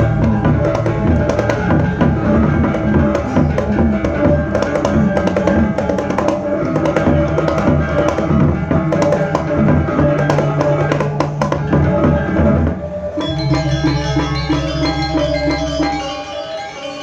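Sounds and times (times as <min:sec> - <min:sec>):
drums: 0:00.0 - 0:17.0
gong-chime tones: 0:13.2 - 0:17.0
sharp percussive strokes: 0:13.2 - 0:17.0.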